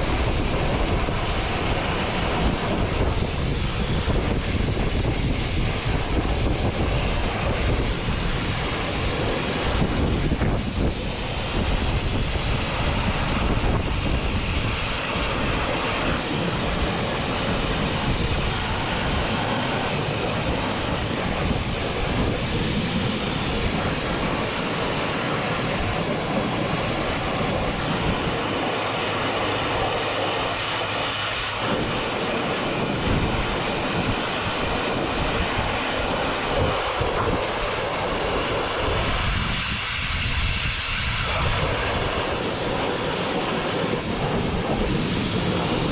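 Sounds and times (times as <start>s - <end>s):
pressure washer jet spraying: 5.0s - 45.8s.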